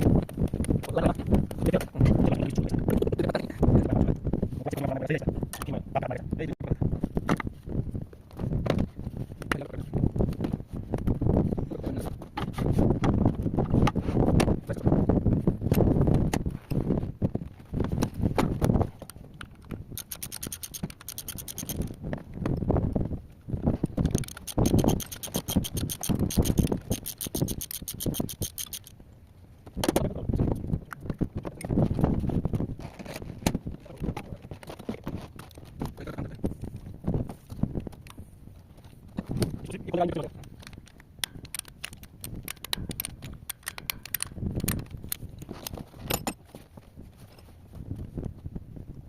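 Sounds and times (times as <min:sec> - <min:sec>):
wrench clicking and scraping: 0:19.9 - 0:22.0, 0:24.0 - 0:29.0, 0:40.4 - 0:46.4
metallic clinks of hand tools: 0:20.0 - 0:22.0, 0:24.1 - 0:28.9.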